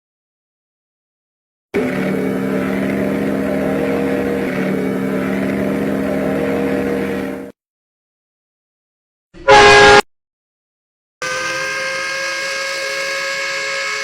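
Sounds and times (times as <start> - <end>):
train horn over rumble: 1.8 - 7.5, 9.5 - 10.0.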